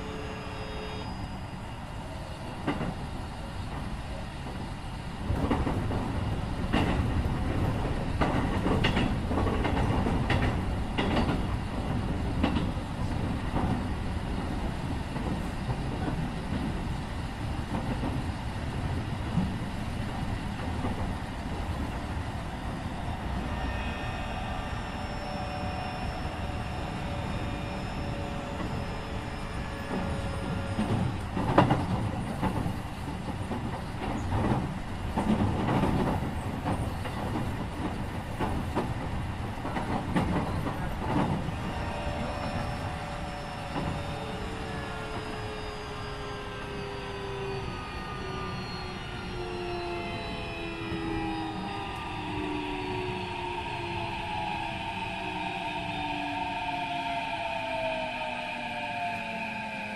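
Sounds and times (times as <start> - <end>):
train running on rails: 0.0 - 59.9.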